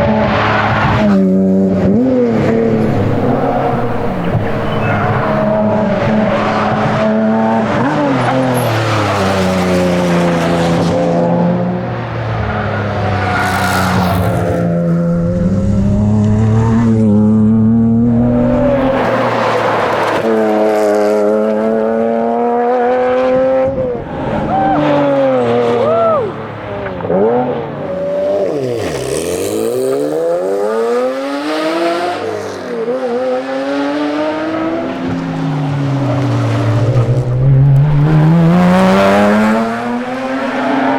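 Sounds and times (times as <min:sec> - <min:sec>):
sports car engine revving hard: 0:02.5 - 0:09.1, 0:33.9 - 0:40.9.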